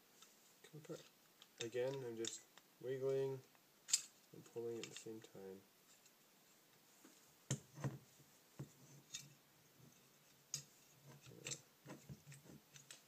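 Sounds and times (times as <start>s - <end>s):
metal parts clicking: 0.9s - 2.4s, 3.9s - 4.2s, 4.8s - 5.2s, 10.5s - 13.0s.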